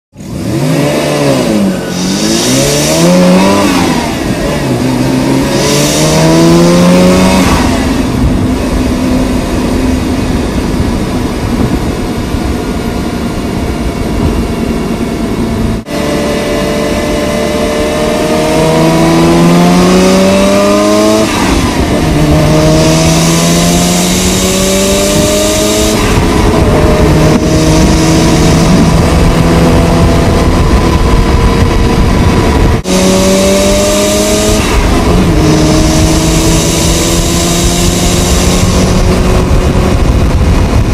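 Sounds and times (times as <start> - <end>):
rotary engine revving: 0.2 - 40.9
turbo rushing hiss: 1.9 - 3.9.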